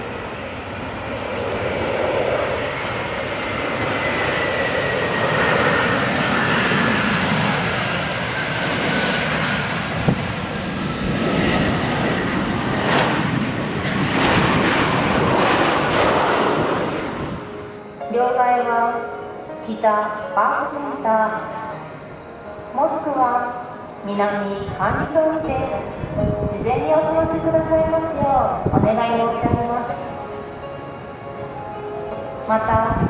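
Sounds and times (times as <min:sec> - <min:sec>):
jet airliner engine whine: 0:00.0 - 0:33.0
wind buffeting microphone: 0:00.6 - 0:17.8, 0:24.2 - 0:31.6, 0:32.4 - 0:33.0.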